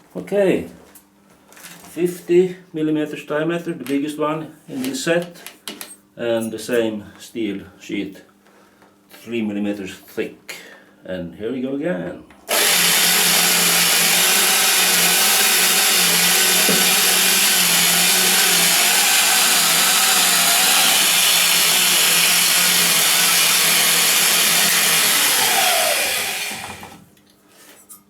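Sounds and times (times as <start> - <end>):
drill motor hum: 12.5 - 27.0
hole saw grinding steel sheet: 12.5 - 27.0.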